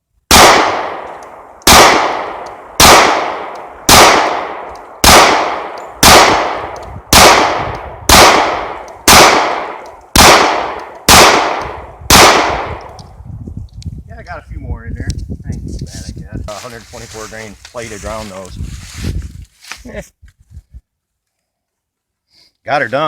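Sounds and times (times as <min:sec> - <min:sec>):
pistol shots with ringing tail: 0:00.3 - 0:12.9.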